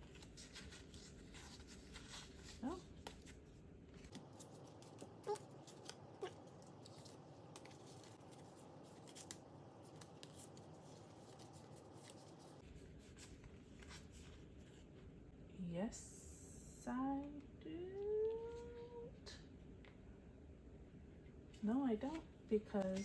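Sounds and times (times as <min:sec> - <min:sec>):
cards being leafed through: 0:00.0 - 0:14.8, 0:22.0 - 0:23.0.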